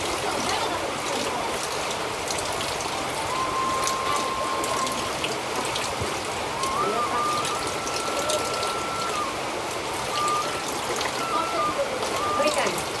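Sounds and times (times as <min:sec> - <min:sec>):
hiss of rain or running water: 0:00.0 - 0:13.0
thin whistle-like tone: 0:03.2 - 0:05.4, 0:06.5 - 0:12.9.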